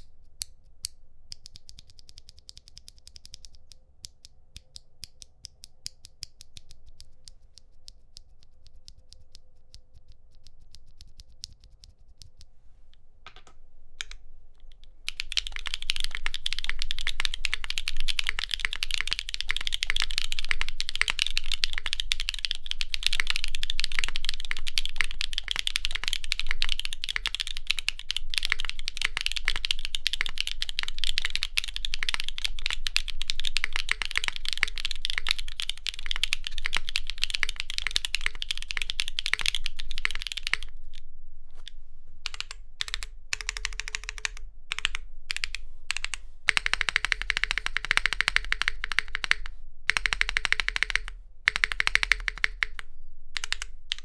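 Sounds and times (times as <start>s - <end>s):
mechanical keyboard typing: 0.0s - 12.4s, 15.1s - 40.7s, 42.2s - 52.8s, 53.4s - 54.0s.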